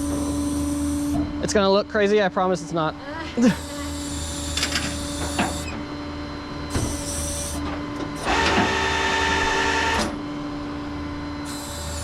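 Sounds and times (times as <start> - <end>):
high winch whine: 0.0 - 12.0
hydraulic winch humming: 3.4 - 5.8, 6.7 - 10.2.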